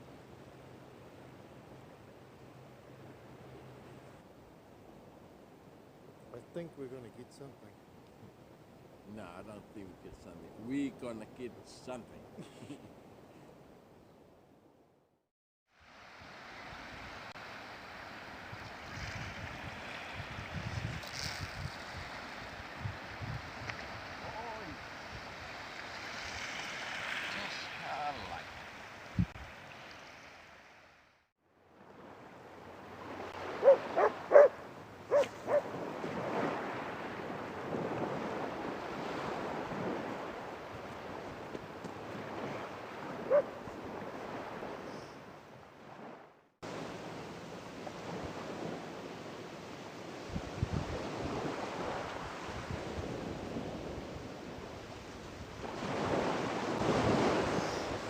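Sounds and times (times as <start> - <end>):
surf washing onto beach: 15.8 - 31.0, 31.8 - 58.0
wind buffeting microphone: 18.4 - 26.4, 29.1 - 29.5, 50.2 - 58.0
dog barking: 33.6 - 35.7, 43.2 - 43.6.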